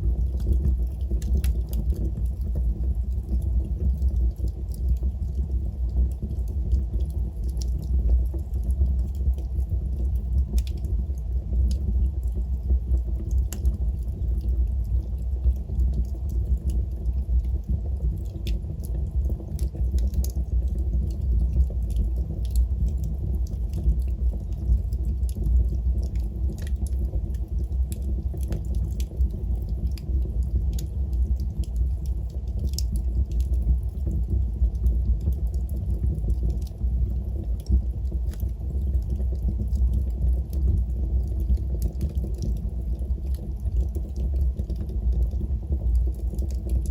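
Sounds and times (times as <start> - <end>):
wood fire crackling and popping: 0.0 - 46.9.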